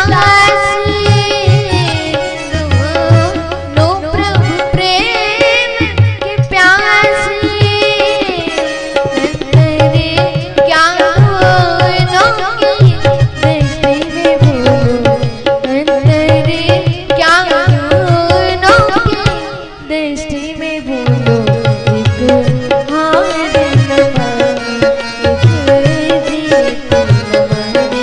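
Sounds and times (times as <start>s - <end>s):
tabla rhythm: 0.0s - 28.0s
woman singing: 0.0s - 28.0s.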